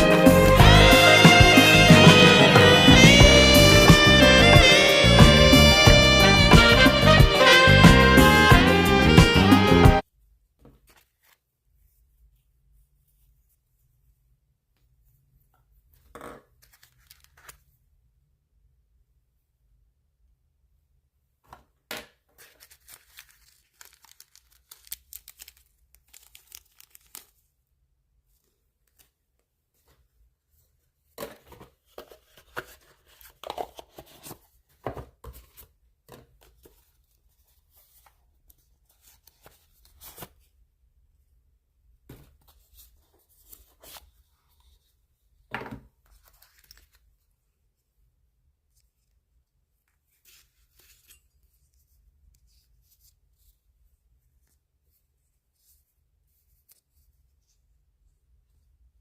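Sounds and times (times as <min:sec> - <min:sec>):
packaging tearing and crinkling: 0:22.4 - 0:27.4.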